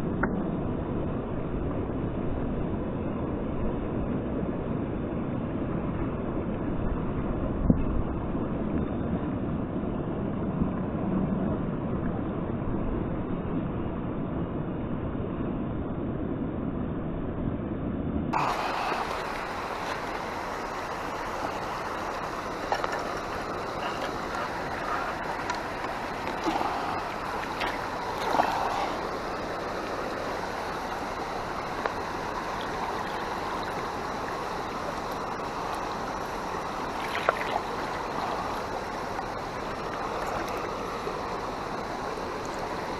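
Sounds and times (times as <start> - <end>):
low rumbling noise: 0.0 - 42.9
river water rushing: 18.4 - 42.9.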